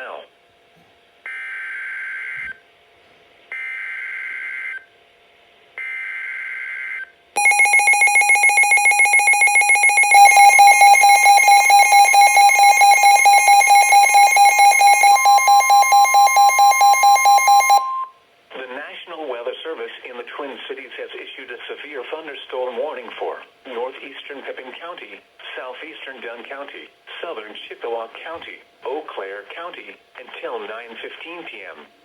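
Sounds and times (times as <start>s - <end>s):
rapidly pulsing alert tone: 7.4s - 18.1s.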